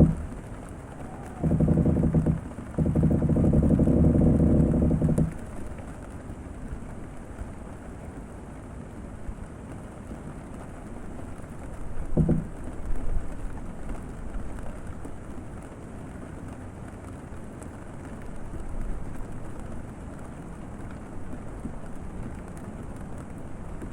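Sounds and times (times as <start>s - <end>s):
wood creaking: 0.0s - 5.8s, 11.9s - 12.8s
rain on a boat cabin: 0.0s - 23.9s.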